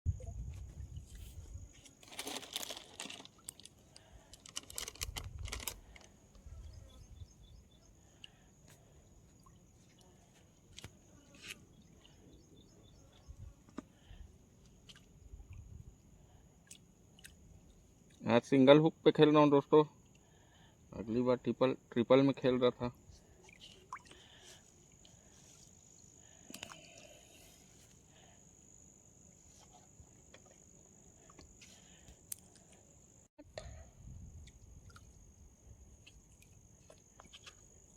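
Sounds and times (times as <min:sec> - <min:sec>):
high-pitched insect trill: 0:00.1 - 0:13.6
rustling: 0:01.2 - 0:06.2.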